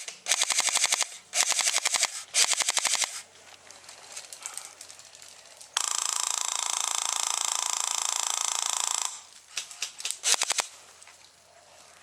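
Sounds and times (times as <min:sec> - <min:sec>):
airsoft gun full-auto burst: 0:00.0 - 0:03.2, 0:05.8 - 0:09.3, 0:10.2 - 0:10.8.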